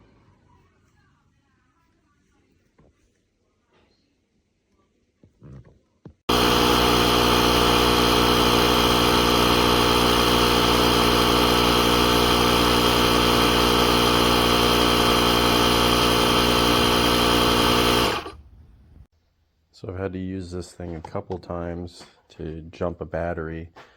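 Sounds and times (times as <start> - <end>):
air compressor running: 6.3 - 18.4.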